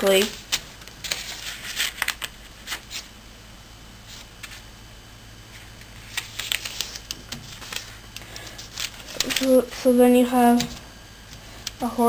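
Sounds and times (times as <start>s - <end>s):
paper folding and creasing: 0.0s - 3.1s, 5.5s - 9.9s.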